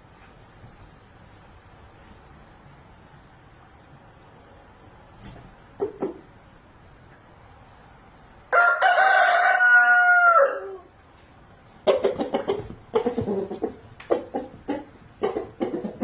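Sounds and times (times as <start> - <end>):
rooster clucking: 5.7 - 6.4, 11.8 - 16.0
rooster crowing: 8.5 - 11.0.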